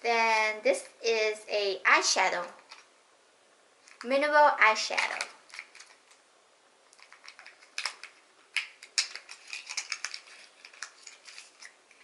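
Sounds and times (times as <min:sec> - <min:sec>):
packaging clicks and crinkles: 0:02.6 - 0:02.9, 0:05.0 - 0:06.2, 0:06.9 - 0:12.0.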